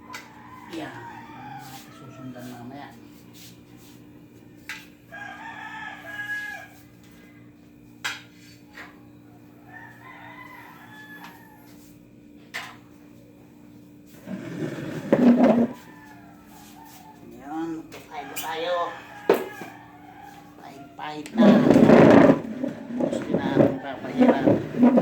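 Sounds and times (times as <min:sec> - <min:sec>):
rooster crowing: 0:00.0 - 0:02.8, 0:05.1 - 0:07.2, 0:09.5 - 0:11.9, 0:14.3 - 0:25.0
rustling: 0:21.3 - 0:25.0.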